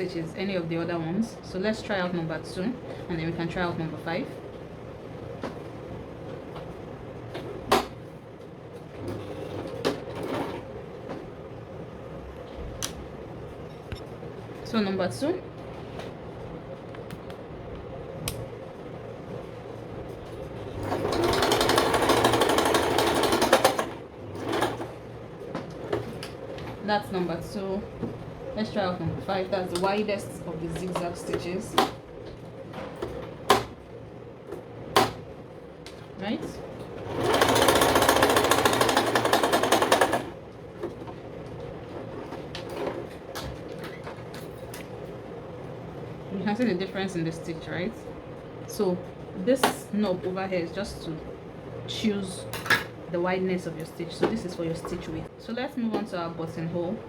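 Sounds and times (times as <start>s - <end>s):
sewing machine stitching: 20.7s - 24.9s, 37.0s - 40.4s
sewing machine needle clatter: 37.1s - 40.3s.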